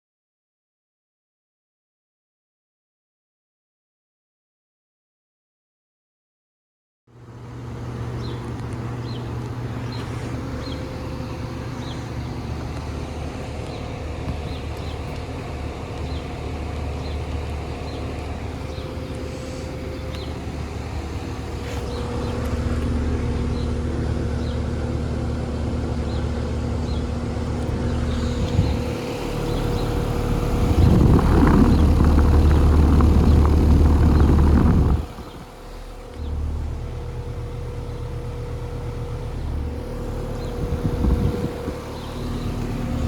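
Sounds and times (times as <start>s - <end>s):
air conditioner humming: 7.4s - 43.0s
loud rush of airflow: 27.7s - 37.0s, 39.7s - 43.0s.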